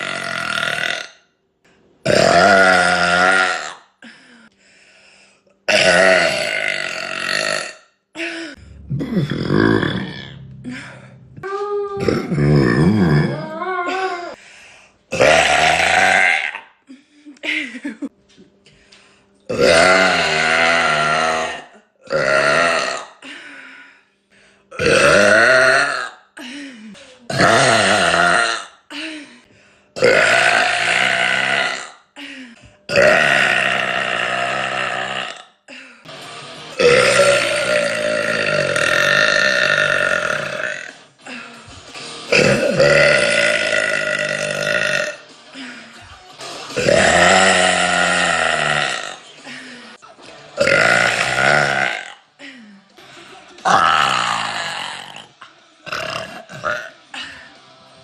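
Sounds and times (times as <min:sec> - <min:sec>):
woman burping loudly: 0:00.0 - 0:01.3, 0:02.0 - 0:04.0, 0:05.7 - 0:07.9, 0:08.5 - 0:14.4, 0:15.1 - 0:16.8, 0:19.5 - 0:23.2, 0:24.7 - 0:26.5, 0:27.3 - 0:29.0, 0:30.0 - 0:32.2, 0:32.9 - 0:35.9, 0:36.8 - 0:41.5, 0:42.3 - 0:45.2, 0:46.8 - 0:49.6, 0:50.6 - 0:52.4, 0:53.6 - 0:57.2.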